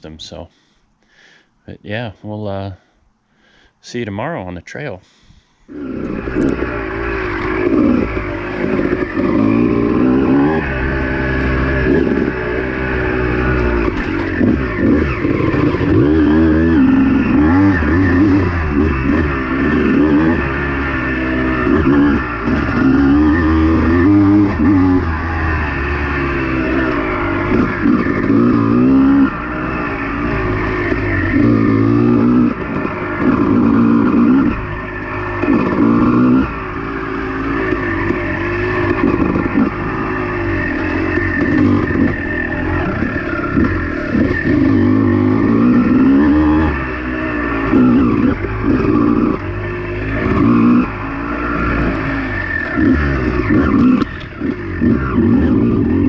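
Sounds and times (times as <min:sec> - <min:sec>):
dirt bike engine revving: 0:05.1 - 0:56.0.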